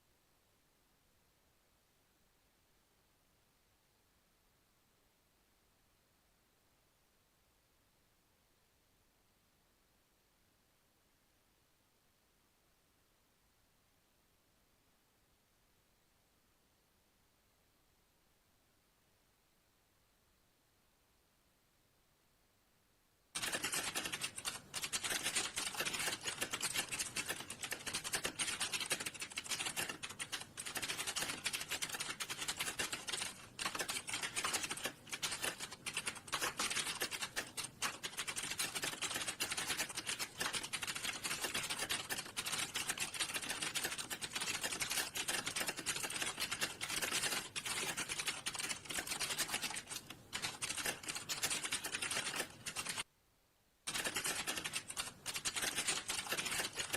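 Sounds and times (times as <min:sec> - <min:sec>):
fast typing on a keyboard: 0:23.4 - 0:53.1, 0:53.9 - 0:56.9.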